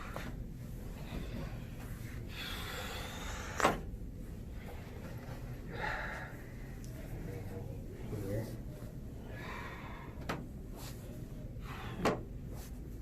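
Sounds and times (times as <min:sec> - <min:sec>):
breathy exhale: 0:02.3 - 0:03.8, 0:05.7 - 0:06.7, 0:09.2 - 0:10.4, 0:11.6 - 0:12.2.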